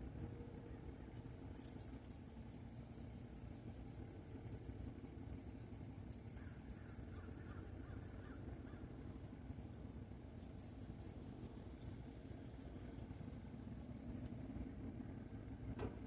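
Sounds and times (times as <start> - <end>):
low outdoor rumble: 0.0 - 16.0
distant bird calls: 6.2 - 9.4.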